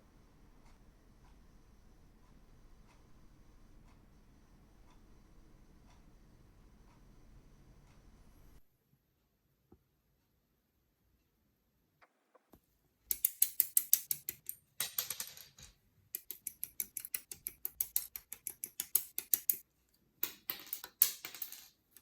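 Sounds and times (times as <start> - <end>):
plastic parts clicking: 13.1 - 19.6.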